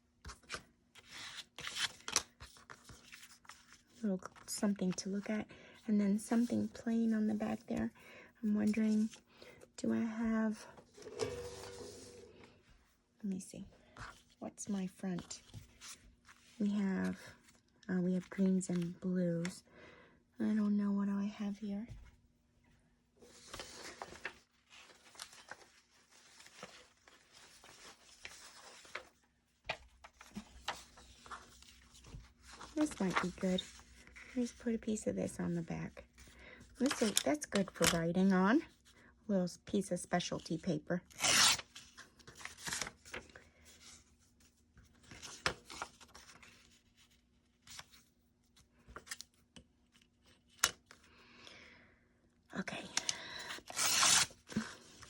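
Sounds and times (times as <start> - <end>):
paper rustling: 0.2 - 4.6, 10.8 - 12.6, 23.3 - 34.6, 41.3 - 51.0
paper rustling and scraping: 10.8 - 12.6, 23.3 - 34.6, 53.6 - 55.0.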